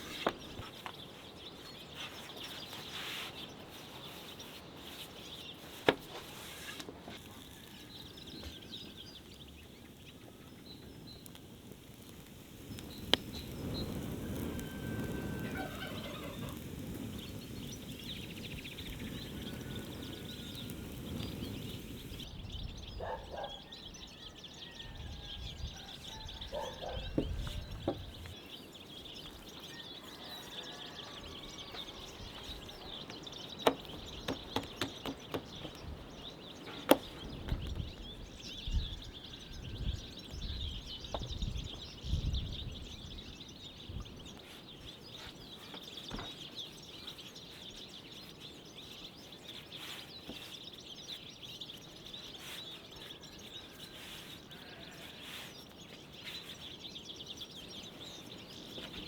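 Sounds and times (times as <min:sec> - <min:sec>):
small birds chirping: 0:00.0 - 0:59.0
fowl calling: 0:13.9 - 0:16.7.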